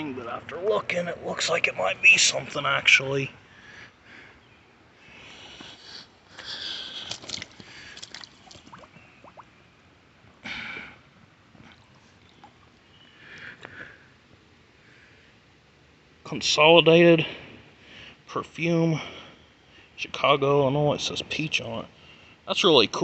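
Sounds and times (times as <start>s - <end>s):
breathy puffs: 5.0s - 8.4s.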